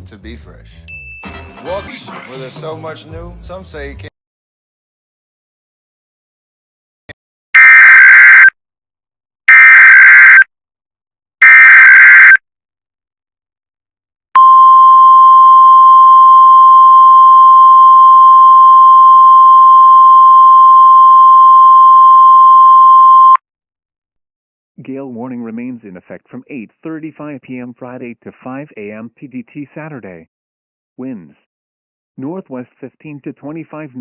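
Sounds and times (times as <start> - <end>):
steady single-pitch attention tone: 14.4 - 23.4.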